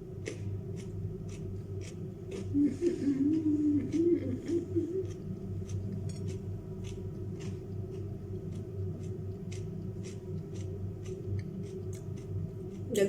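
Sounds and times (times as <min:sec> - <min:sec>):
low hum: 0:00.0 - 0:13.0
chewing crisp crunches: 0:00.1 - 0:13.0.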